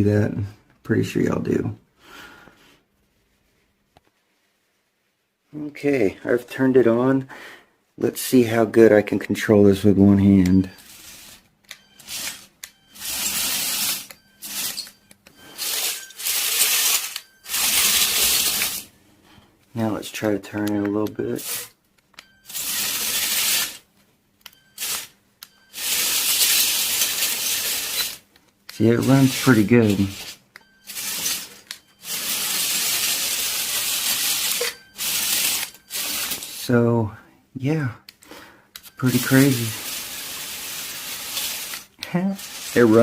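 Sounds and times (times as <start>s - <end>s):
toy tank motor and treads: 10.8s - 18.8s, 21.4s - 21.8s, 22.4s - 23.8s, 24.5s - 36.6s, 38.8s - 43.0s.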